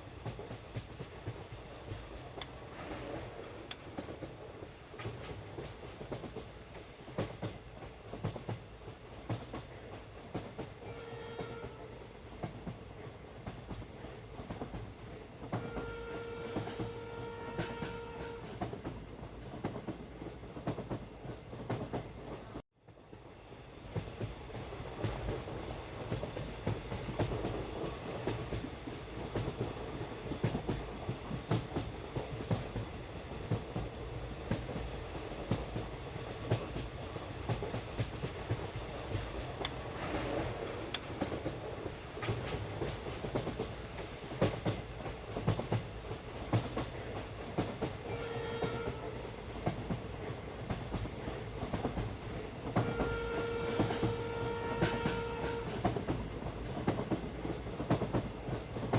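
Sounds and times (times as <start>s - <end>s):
train horn tone: 10.8s - 12.0s, 15.5s - 18.7s, 48.0s - 49.3s, 52.8s - 55.9s.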